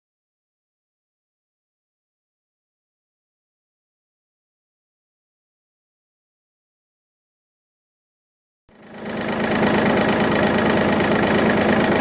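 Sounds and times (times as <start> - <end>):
engine running with fast pulse: 8.7 - 12.0.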